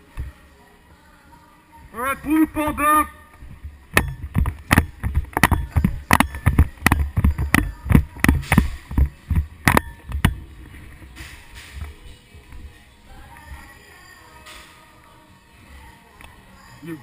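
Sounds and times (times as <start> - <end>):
sharp knocks and thuds: 3.9 - 10.4.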